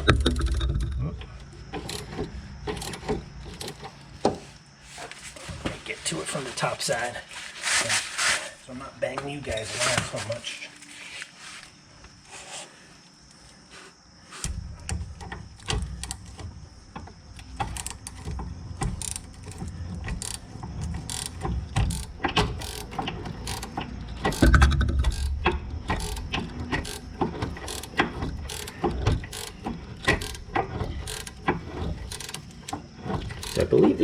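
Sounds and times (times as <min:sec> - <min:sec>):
ratchet wrench clicking: 0:17.4 - 0:32.7, 0:33.3 - 0:33.6.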